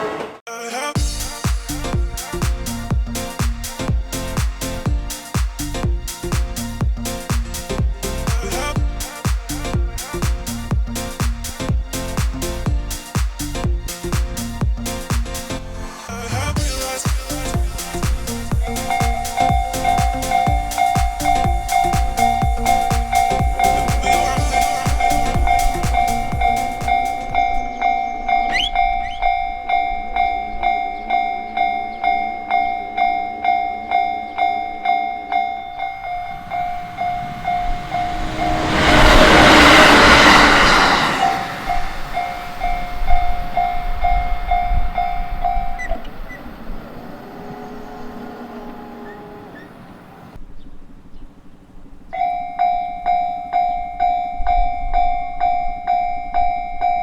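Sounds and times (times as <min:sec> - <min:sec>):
train rushing past: 0:01.0 - 0:31.7, 0:32.9 - 0:50.4
railway crossing bell dinging: 0:18.6 - 0:49.9, 0:52.1 - 0:57.0.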